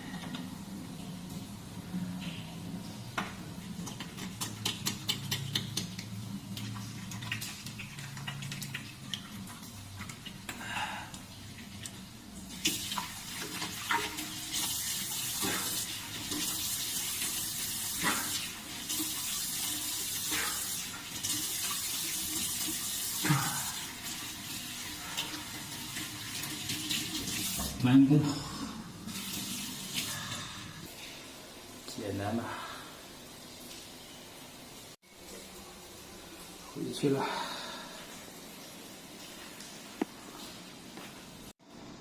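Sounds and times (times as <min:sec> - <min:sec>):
water running from a tap: 0:03.5 - 0:32.4.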